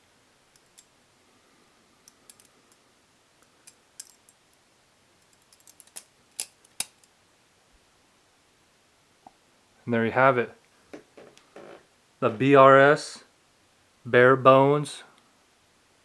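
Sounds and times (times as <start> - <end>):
balisong metal clicks: 0.5 - 0.9, 2.1 - 2.6, 3.6 - 4.4, 5.2 - 7.1.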